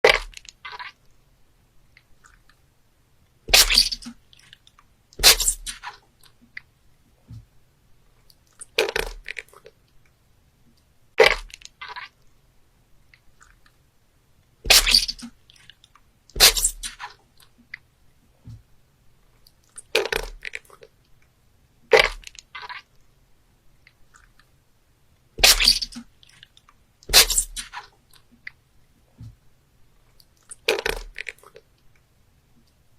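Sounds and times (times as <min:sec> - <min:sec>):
crackling crunching bursts: 0:03.5 - 0:06.7, 0:11.2 - 0:12.3, 0:14.6 - 0:17.8, 0:21.8 - 0:23.0, 0:25.4 - 0:28.6.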